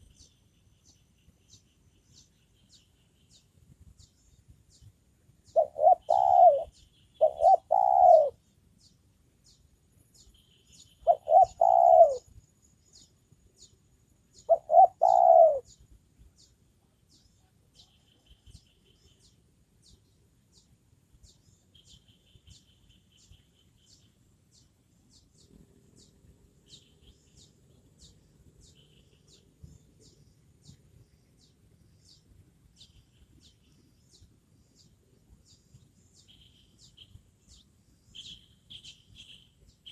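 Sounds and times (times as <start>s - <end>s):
small birds chirping: 0.0s - 39.9s
dove cooing: 5.6s - 8.4s, 11.0s - 12.3s, 14.5s - 15.7s.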